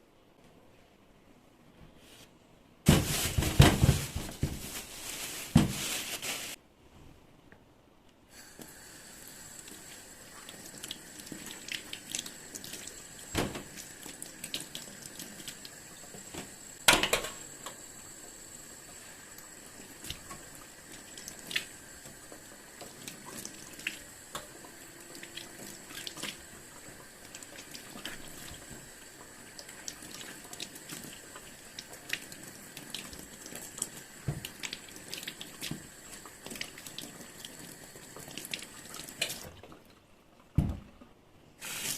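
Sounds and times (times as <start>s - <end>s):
things knocking in sink: 2.9s - 4.7s.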